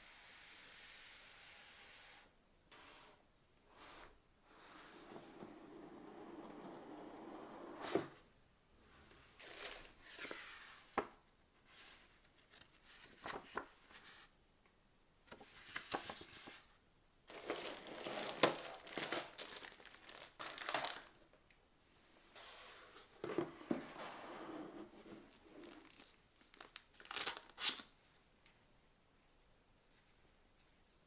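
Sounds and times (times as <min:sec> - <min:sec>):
wrapping crinkling and tearing: 0:17.3 - 0:21.2, 0:25.3 - 0:27.9.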